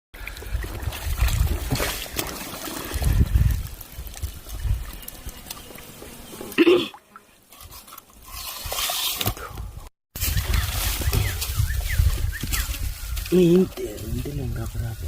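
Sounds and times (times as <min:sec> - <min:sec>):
water splashing by hand: 0:00.2 - 0:06.1.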